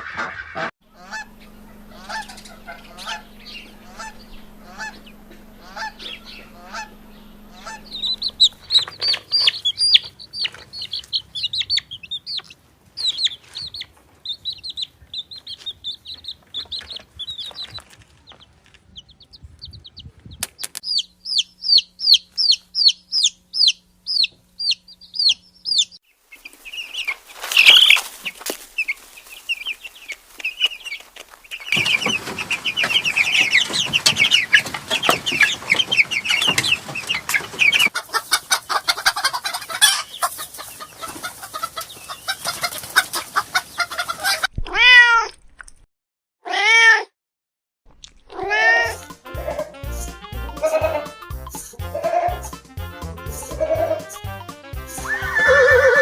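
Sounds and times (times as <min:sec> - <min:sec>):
chicken clucking and calling: 0:00.0 - 0:44.6, 0:48.4 - 0:52.6, 0:53.3 - 0:56.0
high falling chirps: 0:00.9 - 0:17.9, 0:19.2 - 0:38.0
cat meowing: 0:44.6 - 0:45.3, 0:46.5 - 0:47.1, 0:48.3 - 0:49.0.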